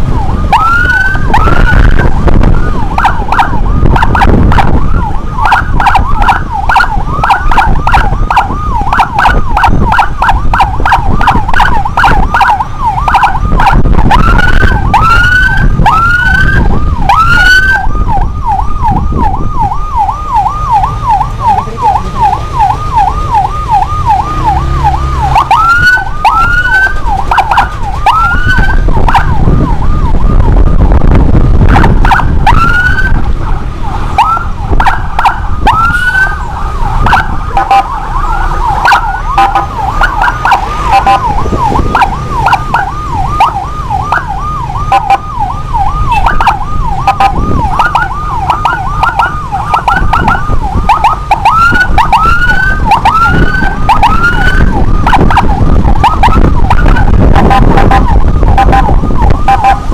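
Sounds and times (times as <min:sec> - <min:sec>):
emergency siren yelp: 0:00.0 - 0:59.9
heavy low rumble: 0:00.0 - 0:59.9
rising siren whoops: 0:00.0 - 0:59.9.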